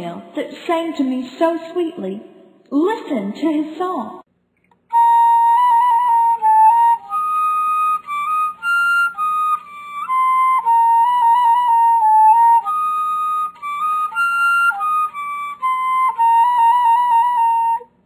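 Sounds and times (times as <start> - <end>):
solo flute melody with trills: 4.9 - 18.0.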